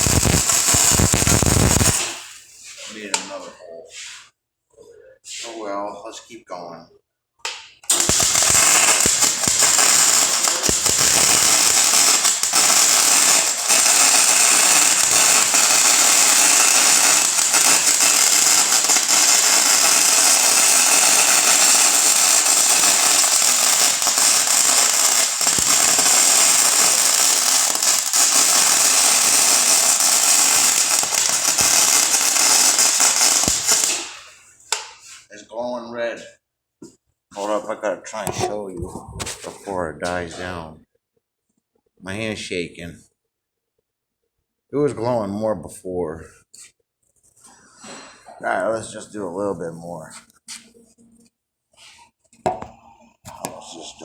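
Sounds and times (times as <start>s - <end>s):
welding arc crackling: 0.0s - 2.3s, 7.9s - 34.9s.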